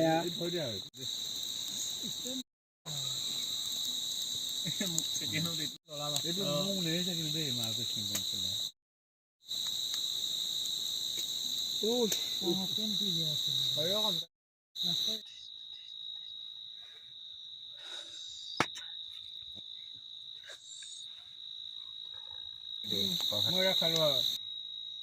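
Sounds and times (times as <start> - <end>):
crickets chirring: 0.0 - 8.8, 9.4 - 25.0
person's voice: 4.7 - 8.2.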